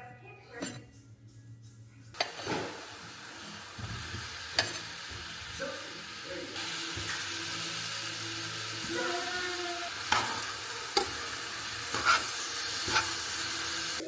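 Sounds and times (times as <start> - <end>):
utensil clink: 0.6 - 0.9
food sizzling in a frying pan: 2.2 - 14.0.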